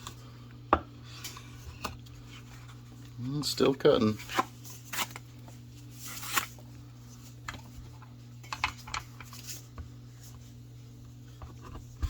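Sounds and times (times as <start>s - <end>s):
knife slicing cardboard: 6.0s - 6.5s.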